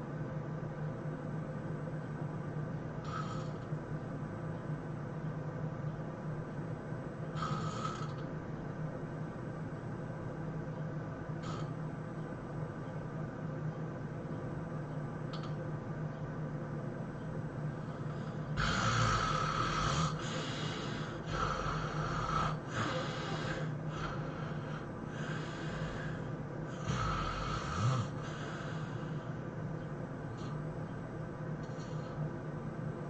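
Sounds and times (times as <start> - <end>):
steady low hum: 0.0 - 33.0
person snoring: 3.1 - 3.6, 7.4 - 8.2, 18.0 - 29.2.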